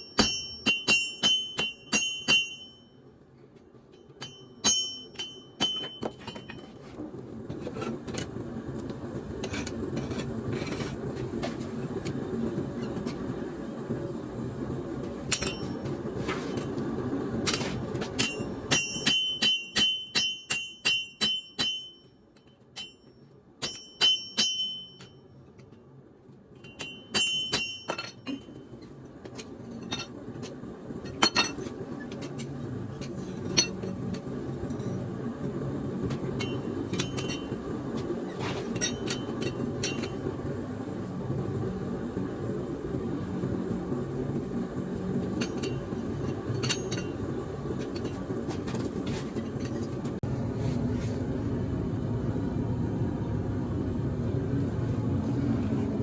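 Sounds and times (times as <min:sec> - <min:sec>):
hammer ringing on steel anvil: 0:00.0 - 0:03.0, 0:04.2 - 0:06.6, 0:18.2 - 0:22.1, 0:22.8 - 0:25.2, 0:26.7 - 0:28.5.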